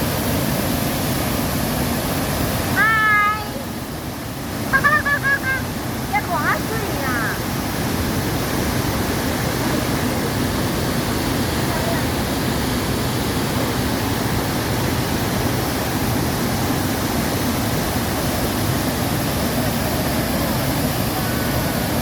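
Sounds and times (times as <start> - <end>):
waterfall rushing: 0.0 - 22.0.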